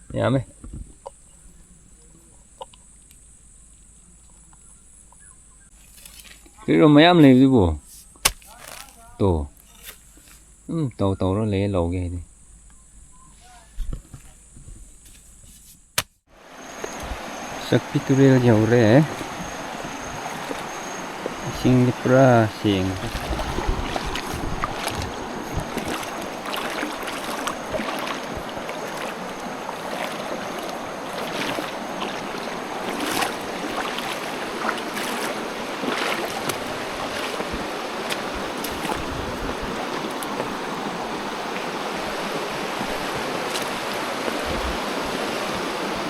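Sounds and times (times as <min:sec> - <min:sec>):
river water rushing: 0:16.3 - 0:46.0.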